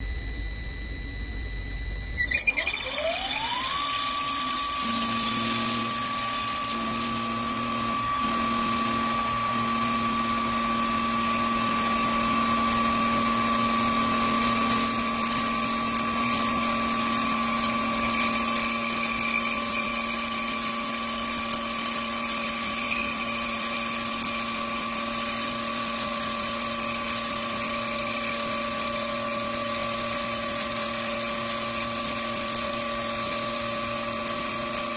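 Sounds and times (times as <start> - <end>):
spindle motor high-pitched whine: 0.0 - 34.9
motor clicks: 2.2 - 9.4.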